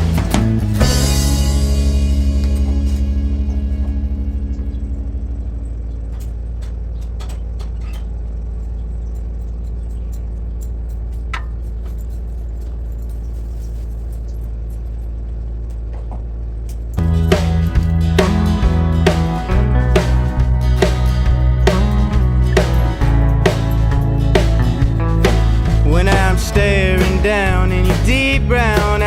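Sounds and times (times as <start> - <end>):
background music with drums: 0.0 - 3.4, 17.0 - 29.0
steady low rumble: 0.0 - 29.0.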